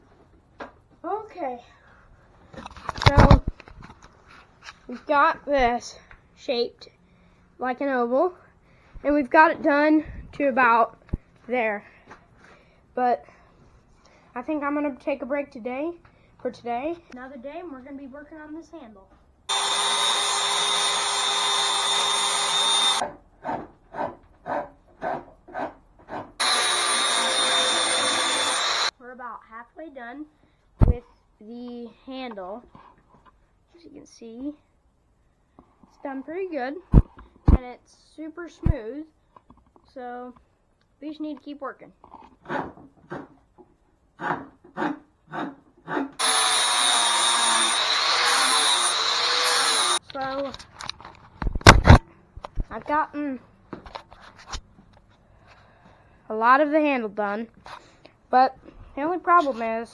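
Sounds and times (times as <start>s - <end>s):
angle grinder grinding wood: 19.5s - 23.0s, 26.4s - 28.9s, 46.2s - 50.0s.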